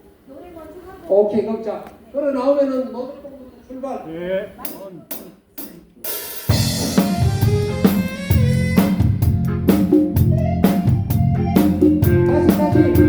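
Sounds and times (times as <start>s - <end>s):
drum kit beat: 4.6s - 13.0s
live band playing: 4.7s - 13.0s.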